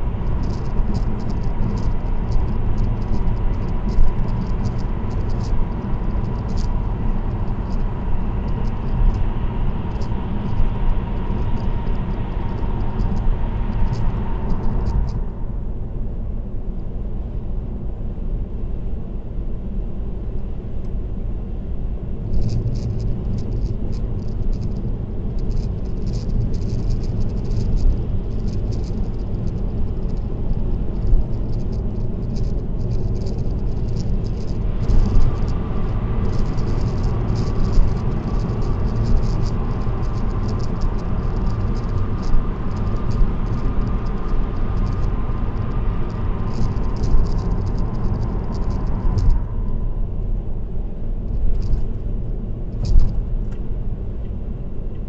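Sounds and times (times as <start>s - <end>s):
faint steady whine: 0.0s - 55.0s
road and tyre rumble inside car: 0.0s - 55.0s
light rattling: 22.4s - 49.4s.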